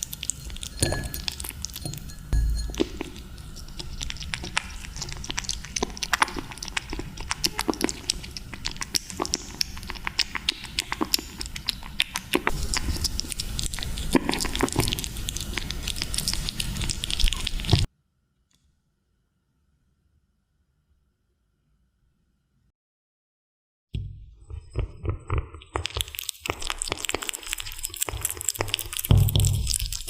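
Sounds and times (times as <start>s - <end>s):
kittens chewing and lapping: 0.0s - 17.9s, 24.5s - 30.0s.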